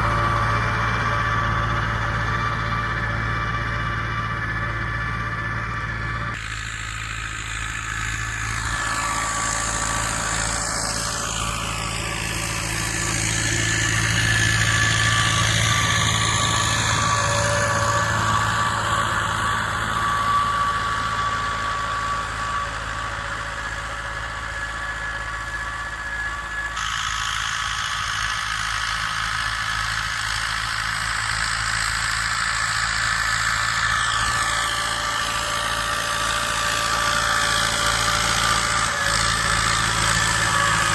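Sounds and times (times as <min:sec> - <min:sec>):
steady high whine: 0:00.0 - 0:40.9
tractor diesel engine under load: 0:00.0 - 0:40.9.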